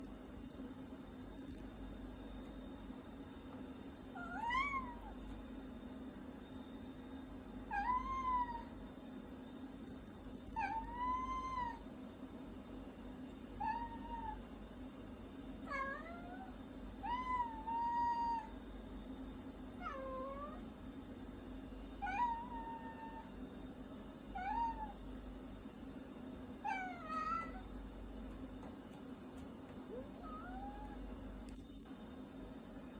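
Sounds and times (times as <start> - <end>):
cat meowing: 4.2 - 5.2, 7.7 - 8.7, 10.6 - 11.8, 24.4 - 25.0, 26.6 - 27.7, 30.2 - 31.0.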